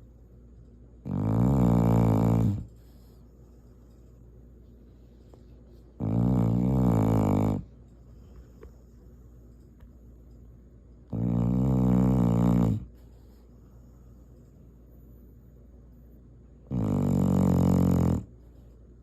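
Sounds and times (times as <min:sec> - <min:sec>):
dog snoring: 0:01.0 - 0:03.2, 0:06.0 - 0:07.8, 0:11.1 - 0:13.2, 0:16.6 - 0:18.3.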